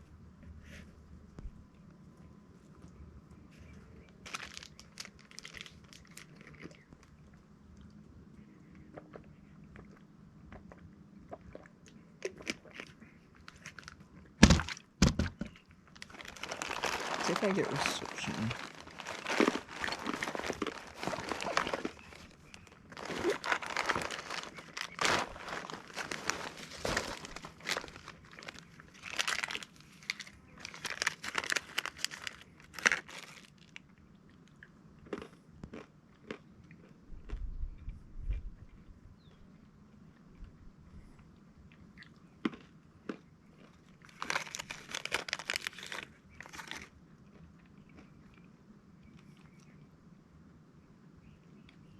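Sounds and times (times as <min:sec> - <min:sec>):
close crinkling and crunching: 0:02.6 - 0:08.0, 0:11.4 - 0:37.4, 0:41.2 - 0:49.8.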